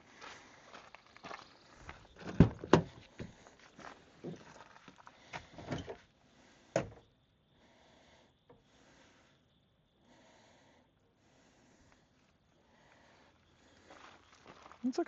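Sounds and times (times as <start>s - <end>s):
footsteps walking: 0.1s - 5.5s, 13.7s - 15.0s.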